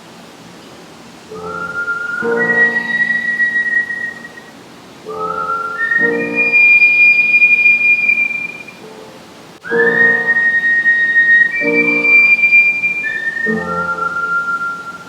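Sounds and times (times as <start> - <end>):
musical accompaniment: 1.3 - 4.3, 5.1 - 15.0
person whistling a melody: 1.3 - 4.5, 5.1 - 8.8, 9.6 - 15.0.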